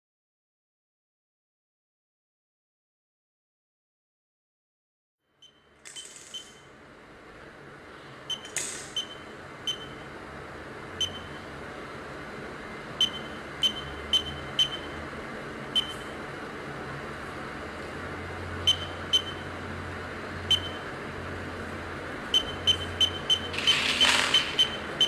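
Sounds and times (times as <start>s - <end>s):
alarm clock beeps: 13.0s - 15.0s, 15.8s - 16.0s, 18.7s - 19.5s, 20.5s - 20.8s, 22.3s - 25.0s.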